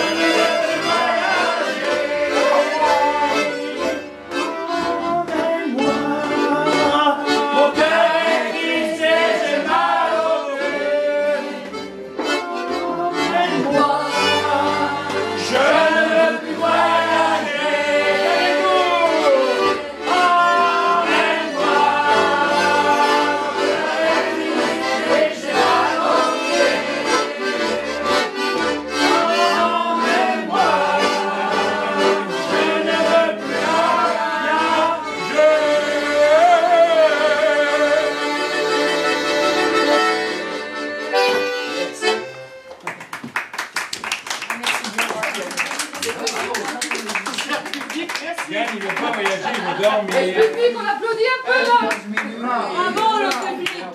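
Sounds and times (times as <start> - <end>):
person singing: 0.0 - 8.5, 12.4 - 17.0, 18.2 - 28.4, 29.0 - 39.8
accordion playing: 0.0 - 43.1, 48.9 - 53.9.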